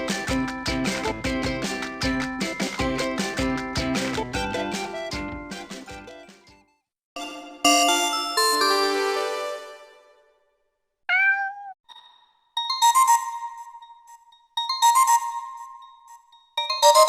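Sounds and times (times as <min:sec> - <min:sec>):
gliding electronic meow sound: 0:11.1 - 0:11.8
bell-like ringtone melody: 0:11.9 - 0:17.0
phone ringtone: 0:12.6 - 0:17.0.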